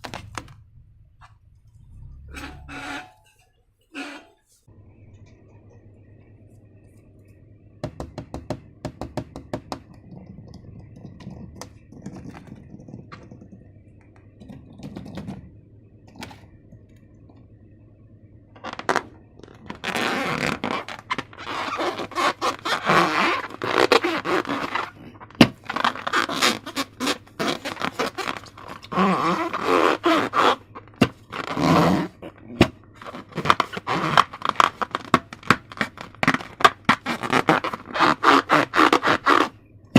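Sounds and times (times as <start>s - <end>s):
noisy handling of slime and balloons: 18.6s - 39.9s.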